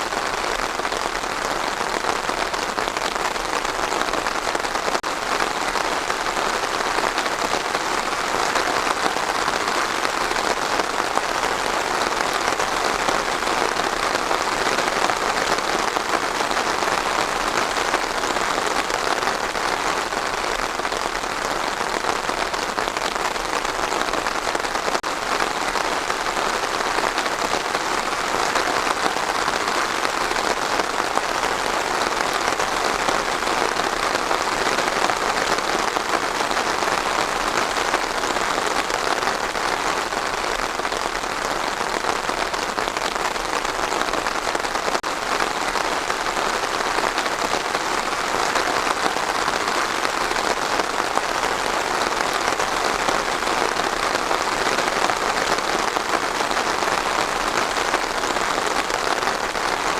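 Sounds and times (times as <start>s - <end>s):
steady rain patter: 0.0s - 59.9s.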